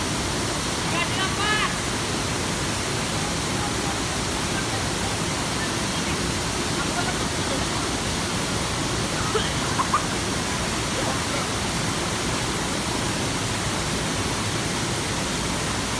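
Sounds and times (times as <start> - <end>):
waterfall rushing: 0.0 - 15.9.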